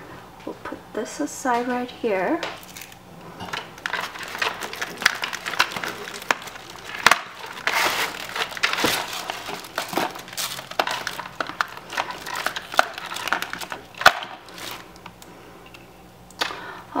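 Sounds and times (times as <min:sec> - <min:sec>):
packaging crinkling: 0:02.6 - 0:15.8.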